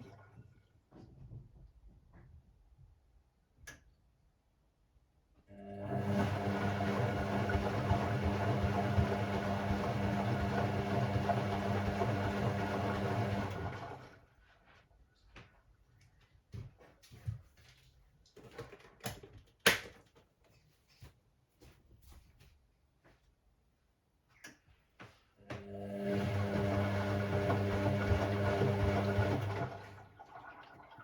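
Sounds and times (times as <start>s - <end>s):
washing machine humming: 5.5s - 14.3s, 25.4s - 31.0s.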